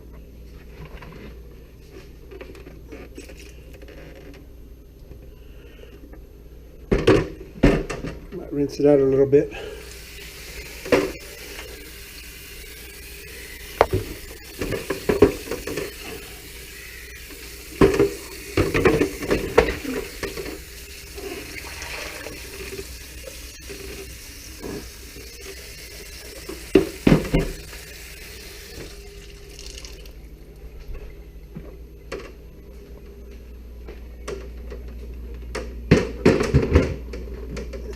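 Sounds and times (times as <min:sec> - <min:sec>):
tap water running into sink: 0:13.7 - 0:24.1, 0:24.7 - 0:30.2.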